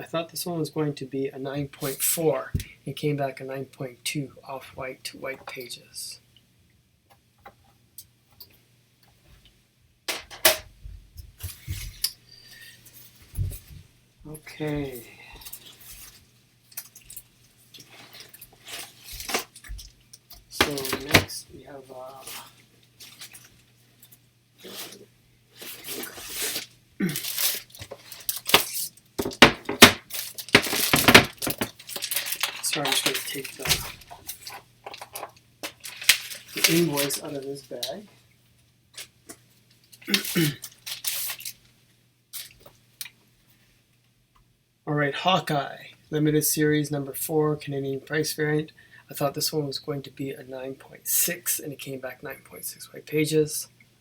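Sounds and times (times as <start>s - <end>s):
plastic bag crinkling: 22.1s - 23.7s, 25.6s - 38.1s, 39.8s - 41.7s
hard plastic cases clacking: 29.2s - 37.2s.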